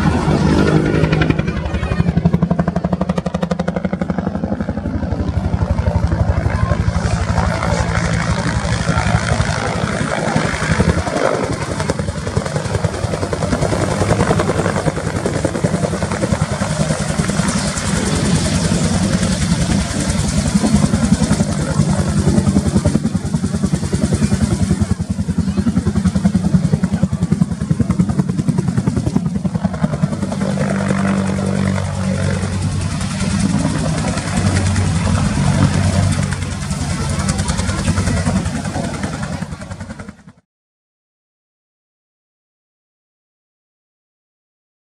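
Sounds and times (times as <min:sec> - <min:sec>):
engine drone: 0:00.0 - 0:02.8, 0:05.2 - 0:39.9
helicopter rotor chopping: 0:00.0 - 0:40.4.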